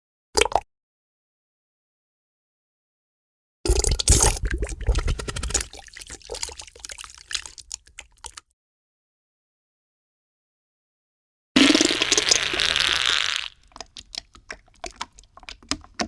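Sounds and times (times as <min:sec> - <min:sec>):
wet sputtering fart: 0:11.6 - 0:13.6.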